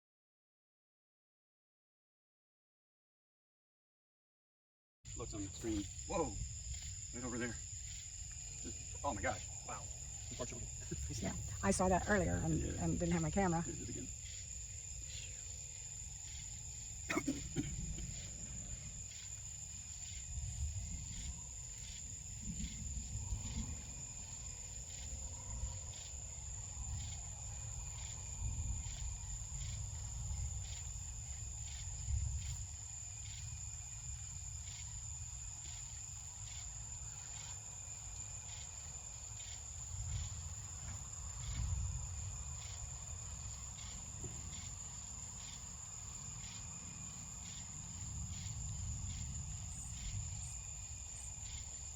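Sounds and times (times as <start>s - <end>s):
crickets chirping: 5.1s - 51.9s.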